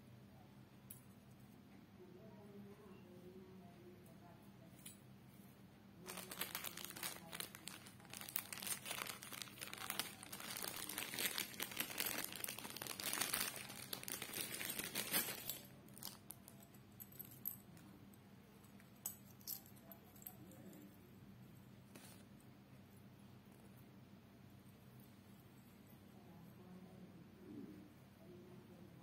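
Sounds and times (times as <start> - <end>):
packaging crinkling: 6.0 - 16.4.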